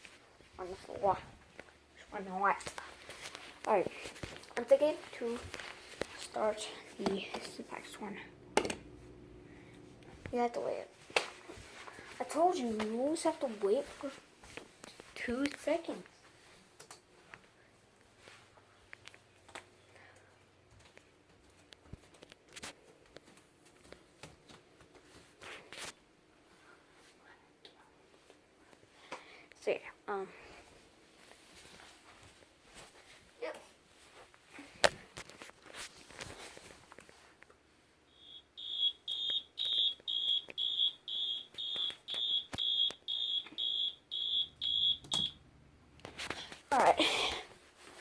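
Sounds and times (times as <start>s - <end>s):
rustling of handling: 0.0s - 7.7s, 30.7s - 37.6s
fire alarm beeping: 38.1s - 45.4s.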